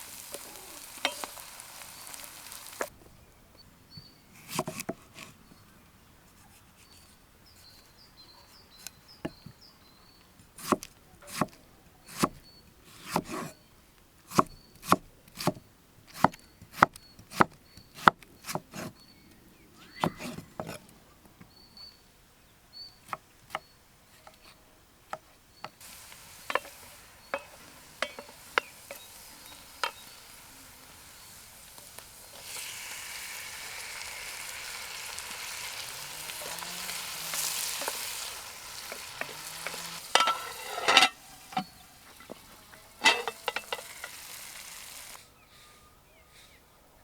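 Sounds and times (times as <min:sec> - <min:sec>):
food sizzling in a pan: 0:00.0 - 0:02.9, 0:25.8 - 0:45.2
utensil knocking against pan: 0:26.4 - 0:29.1, 0:38.9 - 0:41.7, 0:43.0 - 0:44.2.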